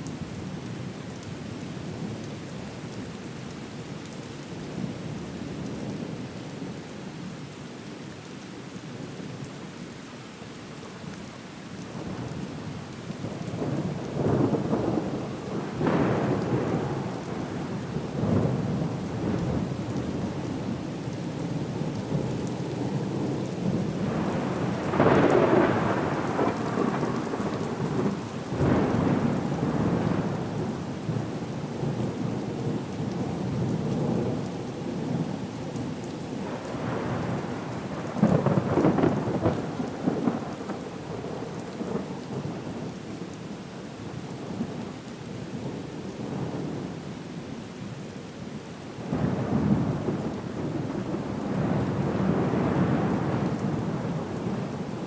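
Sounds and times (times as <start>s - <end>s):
steady rain: 0.0s - 55.0s
rumbling thunder: 13.6s - 19.8s, 22.9s - 30.8s, 36.6s - 42.6s, 49.1s - 54.6s.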